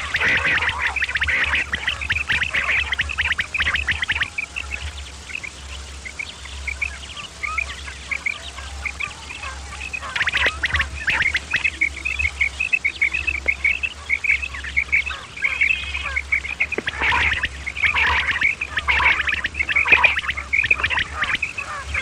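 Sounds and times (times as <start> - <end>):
harsh bird calls: 0.0 - 22.0
quail chirping calls: 0.0 - 22.0.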